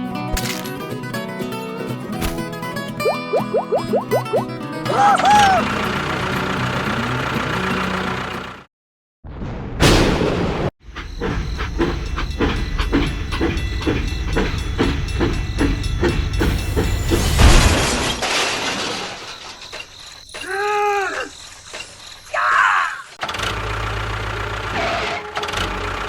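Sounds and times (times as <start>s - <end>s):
rising and falling tone: 3.0s - 4.6s
machine chugging: 11.0s - 17.5s.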